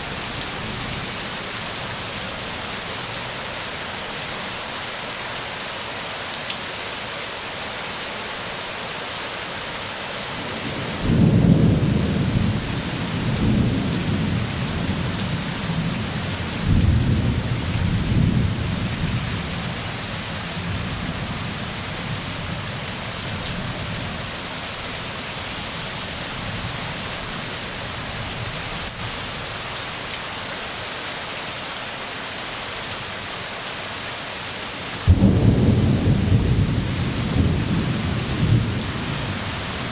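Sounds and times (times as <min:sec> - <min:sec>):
steady rain: 0:00.0 - 0:39.9
rolling thunder: 0:10.4 - 0:19.3, 0:35.0 - 0:39.6.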